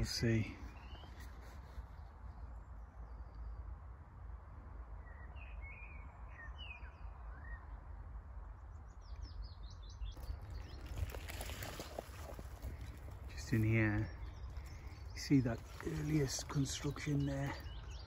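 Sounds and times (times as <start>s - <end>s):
low outdoor rumble: 0.0s - 18.0s
songbird chirping: 0.0s - 18.0s
rustling and crackling: 10.2s - 17.8s.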